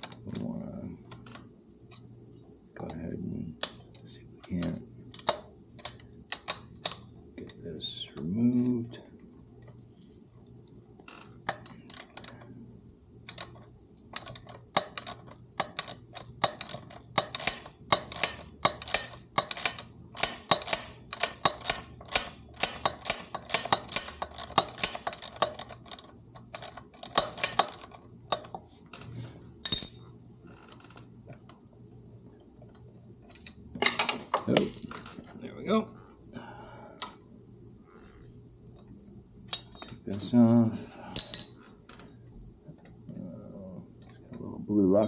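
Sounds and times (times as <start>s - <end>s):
wrench metal clicks and clinks: 14.2s - 28.5s.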